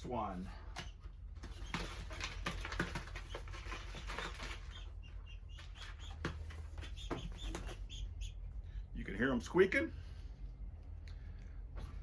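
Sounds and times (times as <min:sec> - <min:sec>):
faint high pigeon squeaks: 0:00.8 - 0:08.4.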